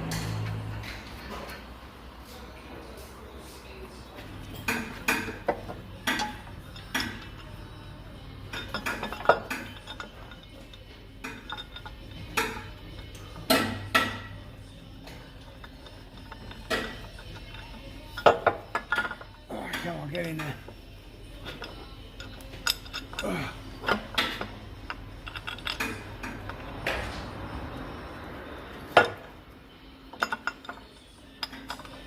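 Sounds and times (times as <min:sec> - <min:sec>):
metal tools clinking on steel: 0:04.4 - 0:14.4, 0:15.0 - 0:28.1, 0:30.0 - 0:32.0.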